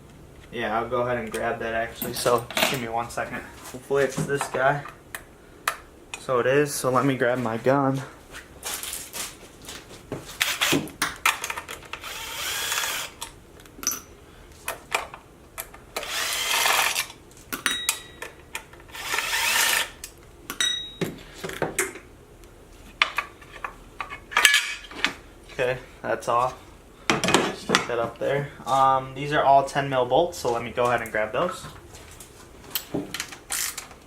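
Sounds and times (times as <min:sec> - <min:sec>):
impact driver running: 0:12.0 - 0:13.2
tool and bolts clattering: 0:23.0 - 0:25.2.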